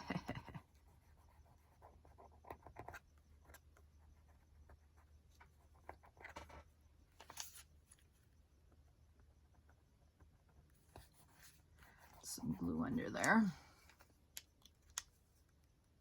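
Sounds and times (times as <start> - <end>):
paper rustling and scratching: 5.9 - 8.1.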